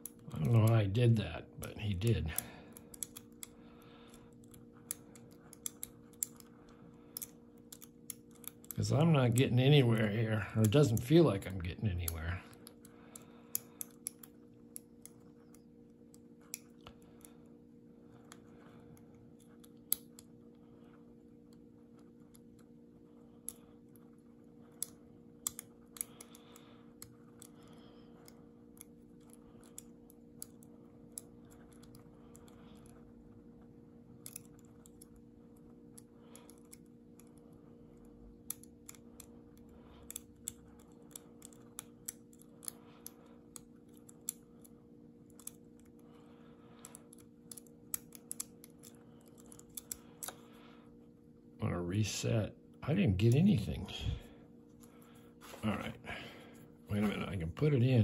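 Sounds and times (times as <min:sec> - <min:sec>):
lock pick clicking and scraping: 0:02.3 - 0:06.5, 0:07.1 - 0:09.5, 0:34.2 - 0:35.1, 0:38.5 - 0:46.0, 0:46.8 - 0:50.5.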